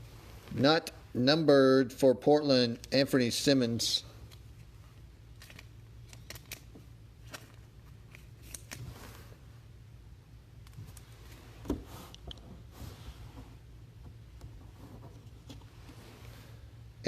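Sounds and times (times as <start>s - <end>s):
low steady hum: 0.0s - 17.0s
cards clicking and rustling: 5.3s - 9.2s.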